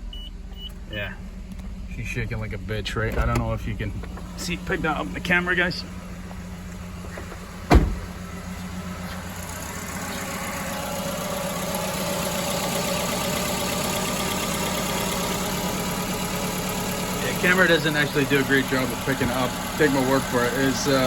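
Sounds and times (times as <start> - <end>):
car engine idling roughly: 0.4 - 21.0
loud thump: 7.2 - 8.2.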